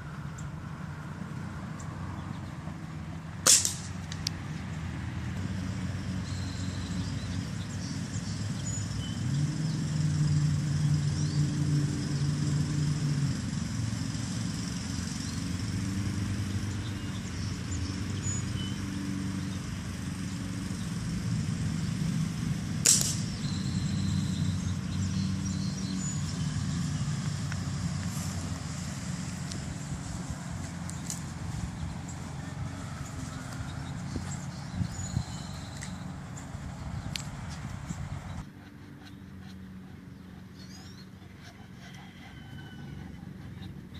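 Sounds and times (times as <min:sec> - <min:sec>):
low engine hum: 0:00.0 - 0:43.9
gunshot crack: 0:03.4 - 0:03.9, 0:22.8 - 0:23.3.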